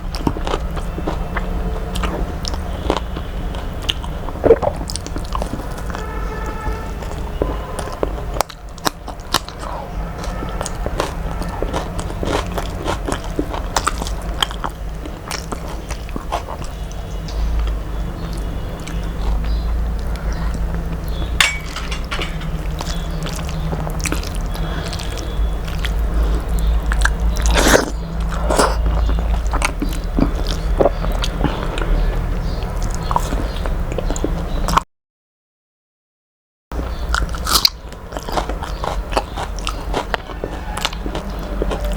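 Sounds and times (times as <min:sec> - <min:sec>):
person eating crunchy food: 0:00.0 - 0:03.0, 0:08.5 - 0:16.9, 0:18.4 - 0:32.0, 0:36.8 - 0:41.9.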